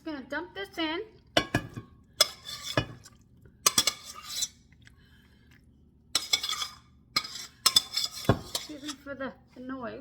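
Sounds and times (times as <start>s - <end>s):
metal utensil scraping a pan: 1.4s - 3.0s, 3.6s - 4.6s, 6.2s - 9.1s.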